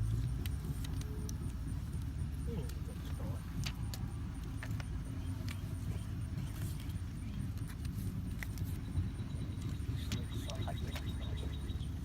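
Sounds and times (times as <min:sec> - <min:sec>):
low engine rumble: 0:00.0 - 0:12.0.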